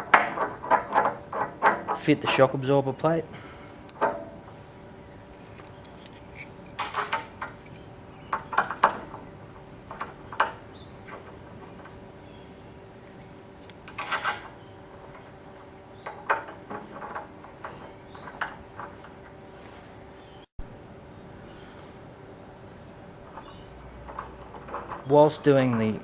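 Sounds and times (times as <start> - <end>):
metal hinge parts clinking: 3.9 - 9.3, 13.2 - 19.4, 23.2 - 26.0.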